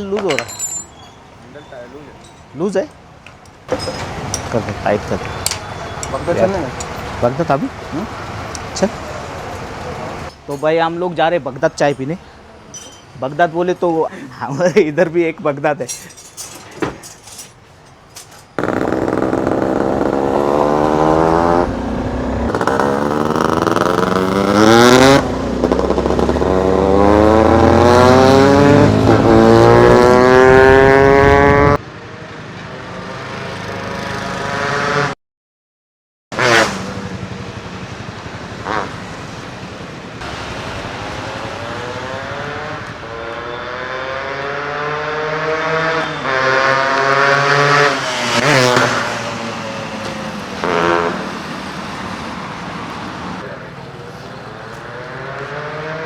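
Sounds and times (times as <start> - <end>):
motorcycle engine revving: 18.6 - 31.8, 38.6 - 39.2, 40.2 - 52.0.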